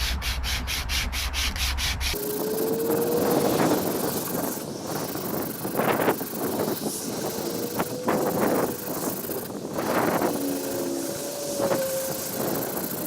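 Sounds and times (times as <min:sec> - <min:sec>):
sandpaper rubbing on wood: 0:00.0 - 0:02.2, 0:03.0 - 0:13.0
rushing noise with rising whine: 0:02.1 - 0:13.0.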